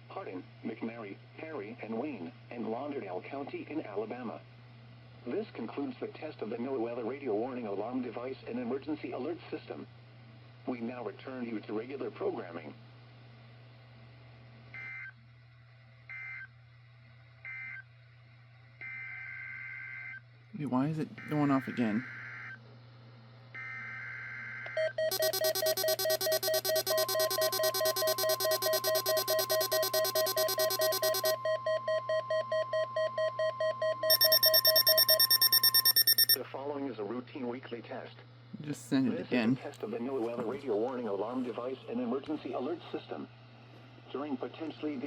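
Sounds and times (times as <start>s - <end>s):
shrill two-pitch alert tones: 25.1s - 36.4s
steady low hum: 25.1s - 36.4s.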